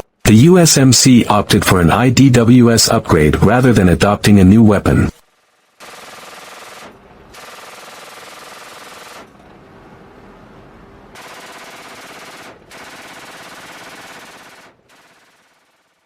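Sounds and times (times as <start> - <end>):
machine gun firing bursts: 5.8 - 9.3, 11.2 - 15.7.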